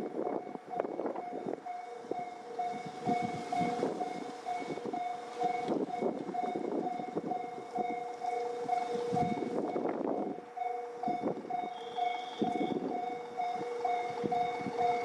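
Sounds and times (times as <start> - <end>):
train rumble and rail clatter: 0.0 - 15.0
lower-pitched crossing bell: 0.3 - 15.0
higher-pitched crossing bell: 10.6 - 15.0.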